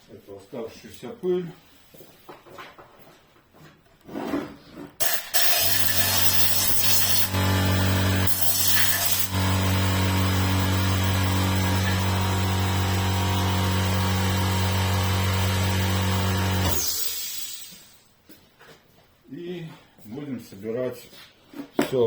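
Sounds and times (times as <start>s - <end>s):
air blow gun hissing: 5.0s - 18.0s
air compressor humming: 5.0s - 18.0s.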